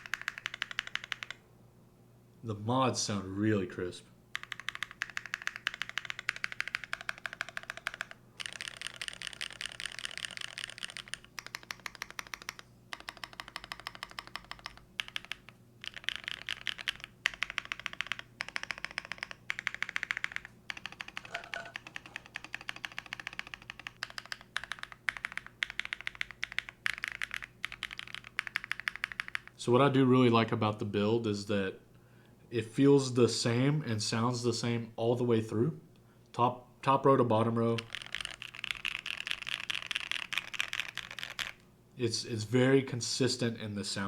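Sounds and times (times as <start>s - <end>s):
fast mechanical keyboard typing: 0.0s - 1.4s, 4.3s - 29.6s, 37.7s - 41.6s.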